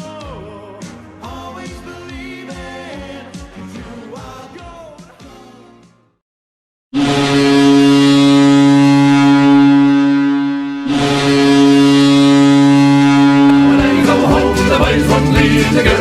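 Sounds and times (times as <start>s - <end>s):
goal song music: 0.0s - 6.0s, 10.2s - 16.0s
goal horn: 6.9s - 16.0s.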